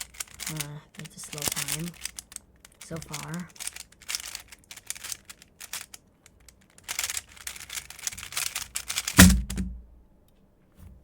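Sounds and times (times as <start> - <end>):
speed cube plastic clicking: 0.0 - 9.8
loud thump: 9.2 - 9.9.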